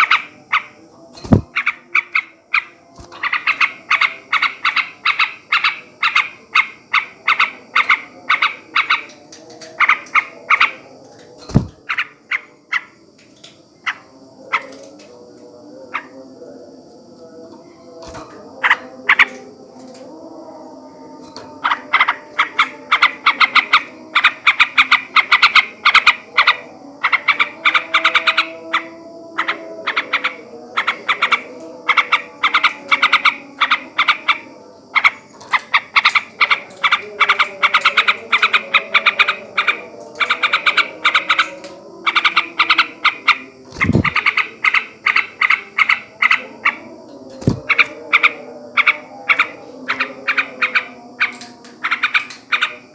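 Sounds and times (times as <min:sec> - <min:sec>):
low swooping thumps: 0:43.8 - 0:44.2.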